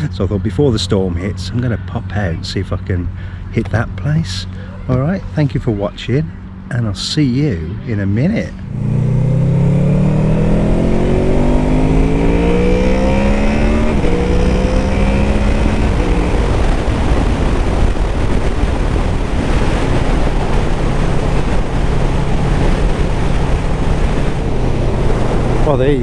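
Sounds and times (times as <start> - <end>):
motorcycle engine accelerating: 8.5 - 26.0
wind rush over microphone: 8.6 - 26.0.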